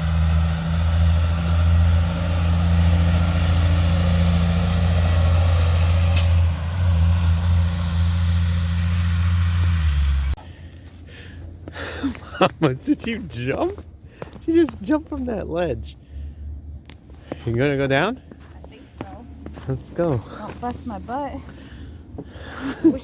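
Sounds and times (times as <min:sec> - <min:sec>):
engine running with hiss: 0:00.0 - 0:10.4.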